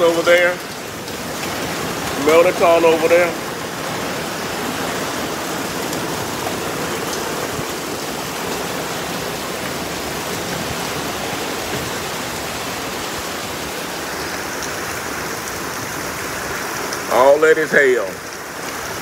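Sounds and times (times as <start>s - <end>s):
hailstones ticking: 0.0s - 19.0s
heavy rain: 0.0s - 19.0s.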